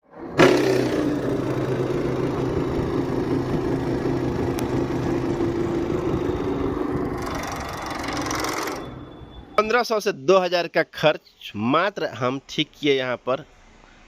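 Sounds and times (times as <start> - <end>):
air conditioner blower humming: 0.4 - 9.0.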